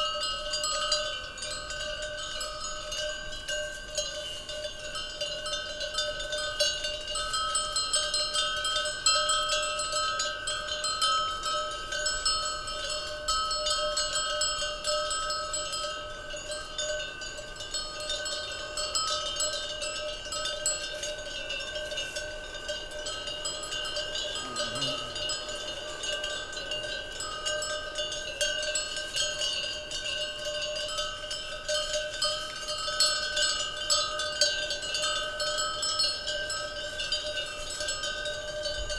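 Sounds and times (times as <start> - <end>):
cowbells clanking: 0.0 - 38.9.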